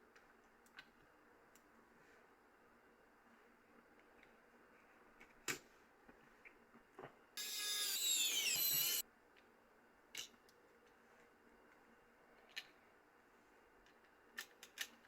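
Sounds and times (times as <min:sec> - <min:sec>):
loud hiss with falling whistle: 0:07.4 - 0:09.0.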